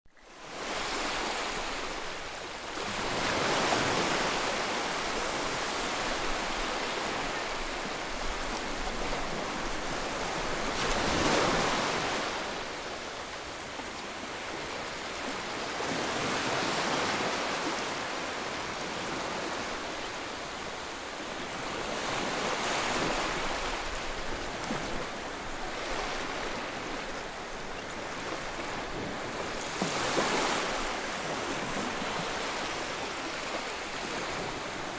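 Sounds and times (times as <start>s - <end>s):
ocean waves breaking: 0.4s - 34.9s.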